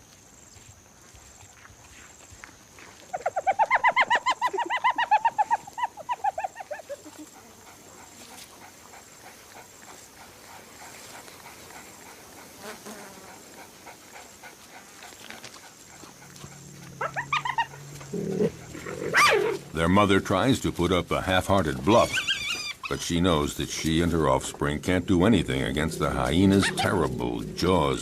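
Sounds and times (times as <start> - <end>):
high yelping animal calls: 3.1 - 14.9, 15.8 - 20.5, 21.2 - 23.4, 25.1 - 28.0.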